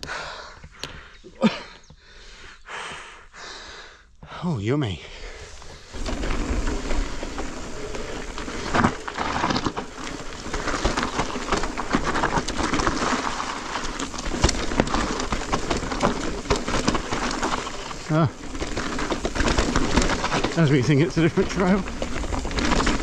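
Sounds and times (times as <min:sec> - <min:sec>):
bike rattling: 0:05.2 - 0:23.0
tyres crunching over dirt and stones: 0:05.4 - 0:23.0.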